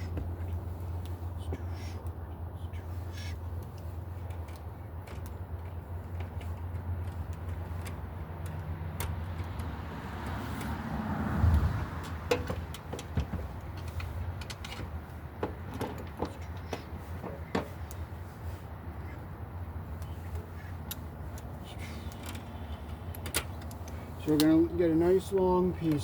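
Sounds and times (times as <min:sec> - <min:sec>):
hand tools and wire clicking: 0:00.0 - 0:10.8, 0:11.4 - 0:18.2, 0:19.2 - 0:26.0
vehicle passing: 0:06.8 - 0:15.3.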